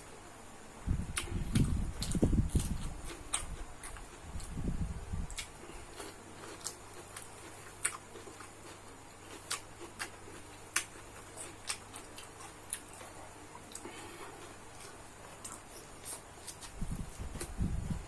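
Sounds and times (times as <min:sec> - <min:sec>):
faint low hum: 0:00.0 - 0:18.0
mouth clicks and smacks chewing: 0:01.1 - 0:04.5, 0:05.3 - 0:16.8.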